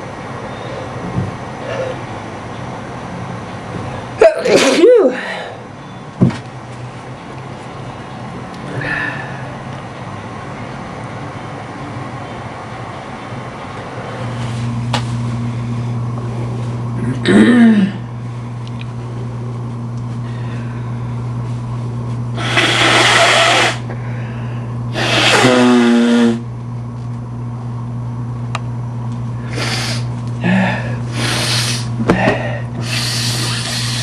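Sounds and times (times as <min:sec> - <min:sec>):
steady low hum: 0:00.0 - 0:34.0
person sneezing: 0:04.2 - 0:05.4, 0:25.0 - 0:26.4.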